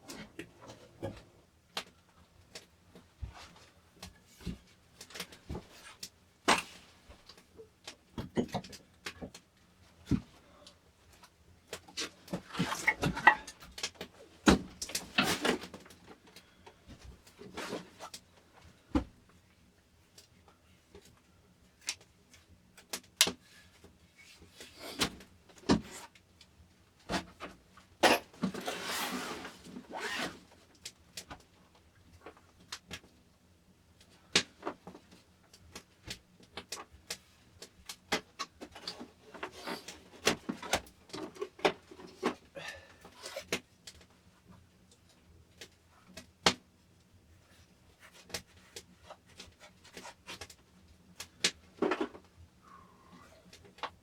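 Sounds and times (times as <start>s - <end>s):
scraping or rustling: 28.0s - 30.5s.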